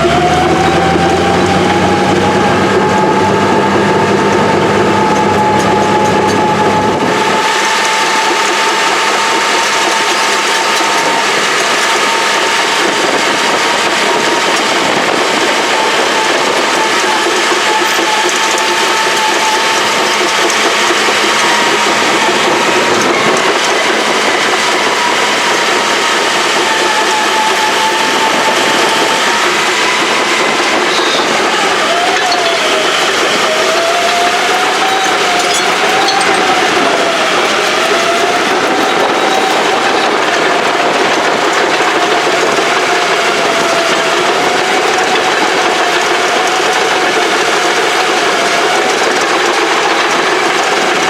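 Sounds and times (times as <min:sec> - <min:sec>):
deep rumble: 0:00.0 - 0:07.5
heavy machinery whine and clatter: 0:00.0 - 0:51.0.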